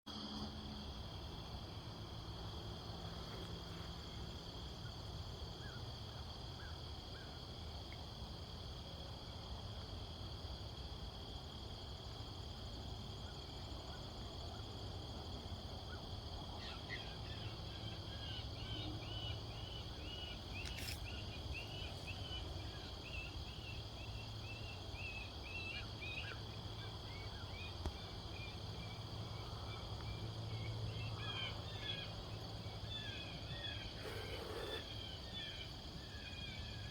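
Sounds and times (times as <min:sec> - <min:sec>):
crickets trilling: 0:00.1 - 0:36.9
rapid short chirps: 0:33.9 - 0:35.0.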